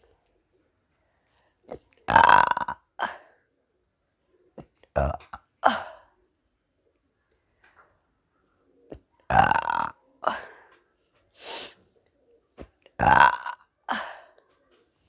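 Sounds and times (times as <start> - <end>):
woman burping: 2.0 - 3.3, 4.9 - 6.1, 9.3 - 10.6, 13.0 - 14.4
breathy hiss: 11.4 - 11.8.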